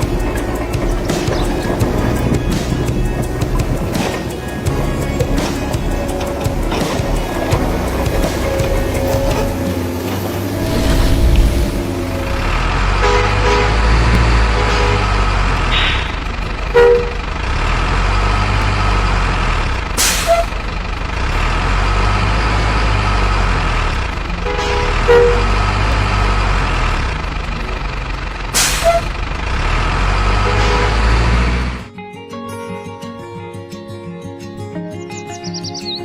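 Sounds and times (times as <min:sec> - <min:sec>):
heavy truck engine running: 0:00.0 - 0:31.9
truck horn toots: 0:06.1 - 0:18.6, 0:20.0 - 0:20.6, 0:24.3 - 0:26.8, 0:28.6 - 0:31.9
sharp air hisses: 0:09.9 - 0:12.6, 0:20.0 - 0:20.6, 0:28.6 - 0:29.1.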